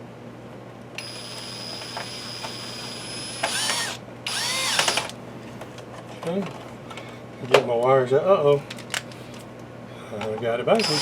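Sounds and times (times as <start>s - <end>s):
cordless drill motor whine: 1.0s - 5.2s, 10.8s - 11.0s.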